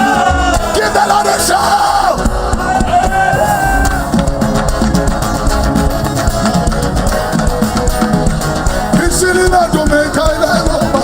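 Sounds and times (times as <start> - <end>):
voices singing along: 0.0 - 5.4
live band with drums and guitar: 0.0 - 11.0.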